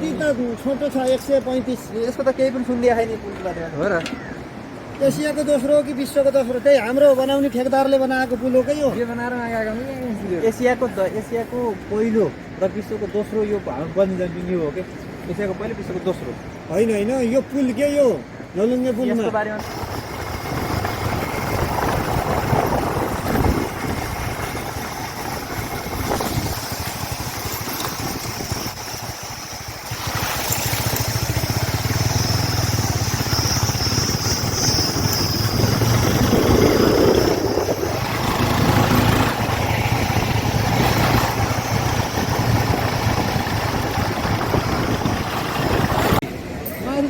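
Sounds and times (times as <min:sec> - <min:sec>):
road noise: 0:00.0 - 0:47.0
wind noise: 0:19.6 - 0:30.8, 0:32.5 - 0:46.6
motorcycle engine running: 0:19.6 - 0:46.2.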